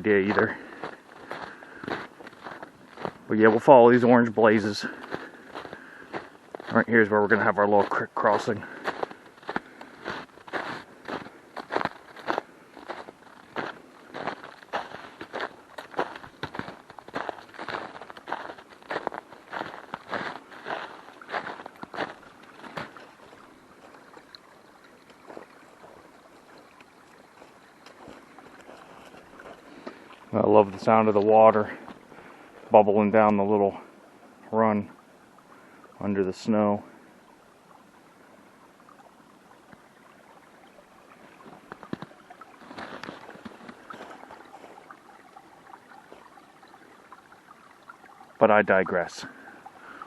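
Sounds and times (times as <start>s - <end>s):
creek bubbling and trickling: 0.0s - 50.0s
footstep crunching in snow: 0.3s - 3.7s, 4.5s - 6.9s, 7.8s - 24.3s, 27.2s - 30.9s, 41.4s - 44.6s.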